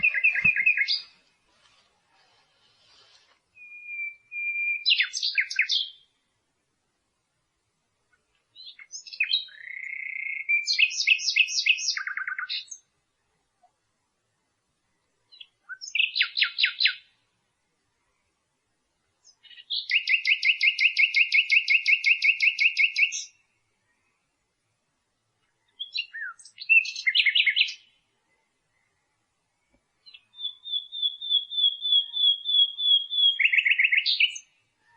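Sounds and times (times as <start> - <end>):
nightingale singing: 0.0 - 1.2, 3.5 - 6.2, 8.1 - 12.9, 15.3 - 17.2, 19.2 - 24.0, 25.4 - 34.9.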